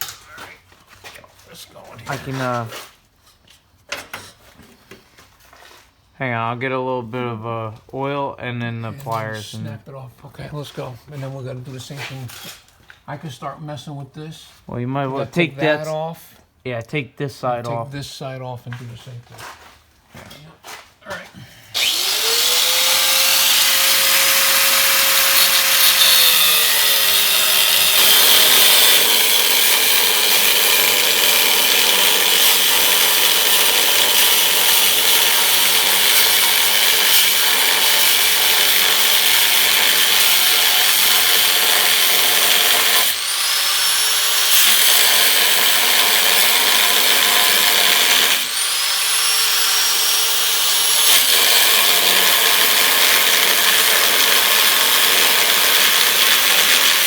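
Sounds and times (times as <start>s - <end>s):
power tool cutting steel: 21.7s - 57.0s.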